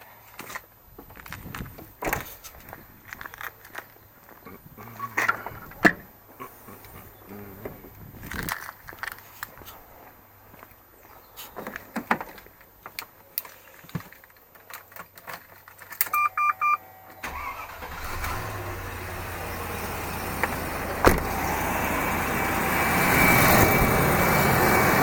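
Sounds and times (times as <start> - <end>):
clicks and rustles in car: 11.6 - 16.2
electronic dashboard beeps: 16.1 - 17.6
car engine starting and running: 17.2 - 25.0.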